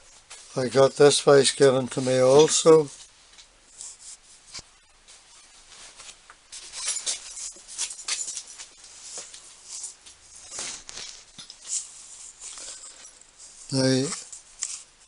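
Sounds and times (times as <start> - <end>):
metal tools scraping and clicking: 6.6 - 8.7.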